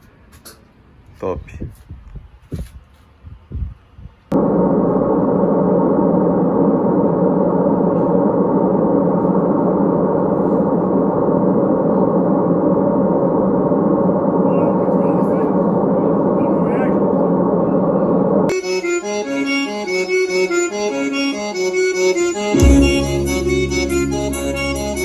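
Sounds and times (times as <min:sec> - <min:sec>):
loud steady drone: 0:17.2 - 0:25.0.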